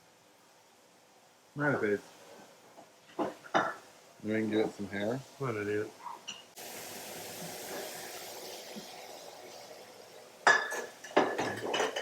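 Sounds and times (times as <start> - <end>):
steady hiss: 0.0 - 12.0
kitchenware clinking: 3.1 - 3.8, 10.4 - 12.0.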